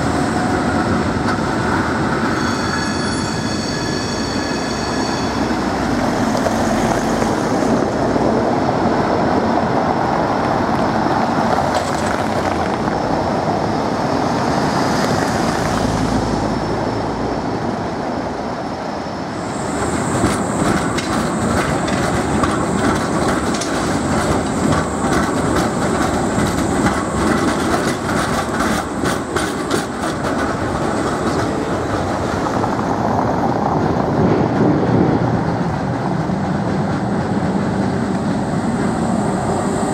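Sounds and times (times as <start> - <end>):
tram running on street track: 0.0 - 39.9
high-pitched wheel squeal: 2.3 - 7.6
wheels clicking over rail joints: 19.8 - 32.2.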